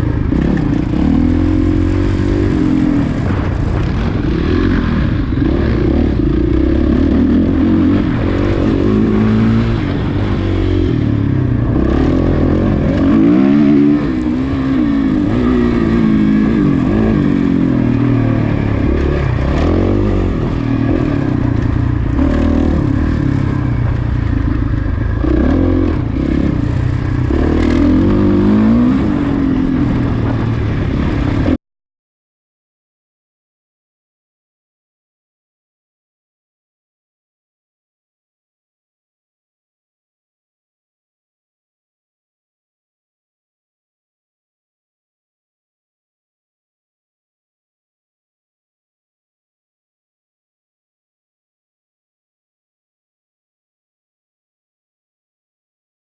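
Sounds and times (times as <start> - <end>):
motorcycle engine revving: 0.0 - 31.6.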